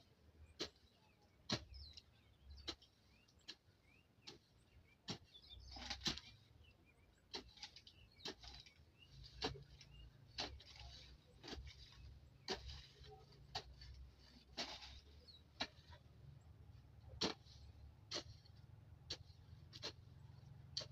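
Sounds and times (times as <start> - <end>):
faint bird chirps: 0.0 - 14.0
weeding tool chopping soil: 0.2 - 20.9.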